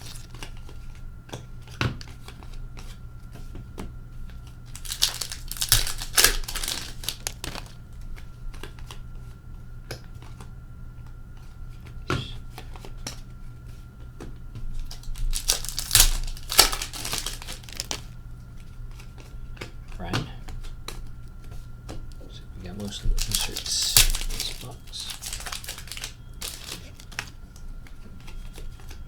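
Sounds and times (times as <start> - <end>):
foil wrappers tearing and crinkling: 0.0 - 0.6, 4.7 - 7.9, 14.8 - 18.2, 22.6 - 27.7
cards clicking: 4.7 - 7.8, 14.9 - 18.1, 22.7 - 28.4.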